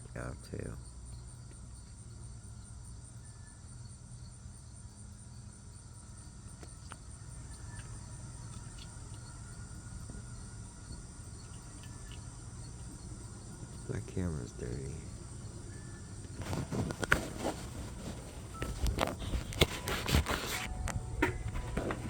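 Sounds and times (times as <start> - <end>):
insect chirring: 0.0 - 22.0
faint ticks: 5.1 - 22.0.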